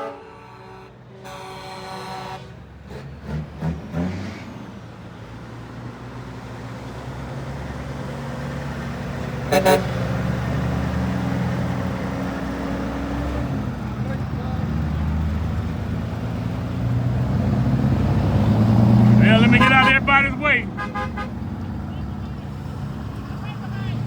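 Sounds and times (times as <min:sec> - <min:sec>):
truck train horn: 0:00.0 - 0:03.0, 0:09.4 - 0:10.6, 0:18.0 - 0:24.0
diesel truck engine running: 0:04.7 - 0:24.0
short horn toot: 0:19.2 - 0:21.4.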